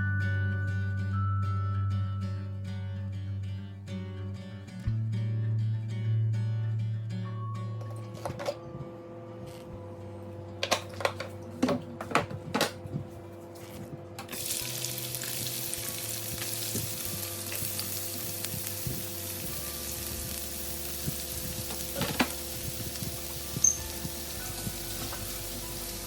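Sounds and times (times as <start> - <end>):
utensils knocking against a pan: 10.6 - 12.8, 21.7 - 22.4
food sizzling in hot oil: 14.3 - 26.0.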